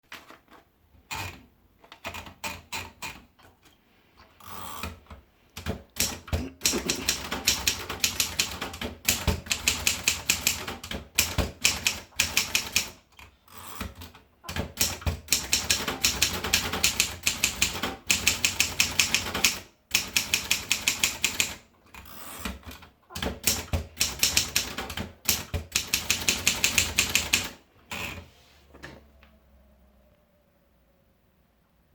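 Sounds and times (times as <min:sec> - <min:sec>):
typewriter keystrokes: 0:05.6 - 0:21.6, 0:22.4 - 0:28.2.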